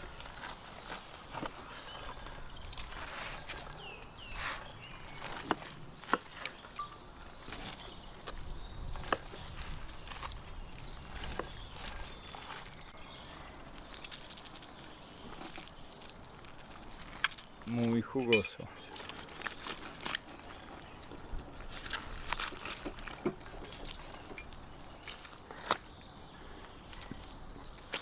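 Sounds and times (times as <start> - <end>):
high-pitched insect chirring: 2.1 - 12.9.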